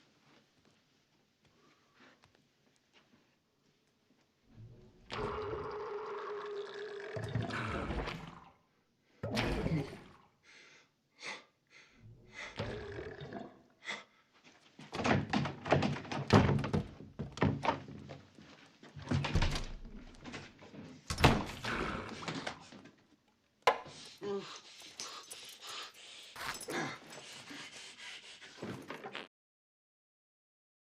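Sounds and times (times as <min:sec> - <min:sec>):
stomach growling and gurgling: 0:04.6 - 0:10.4, 0:12.1 - 0:13.8, 0:21.5 - 0:22.8.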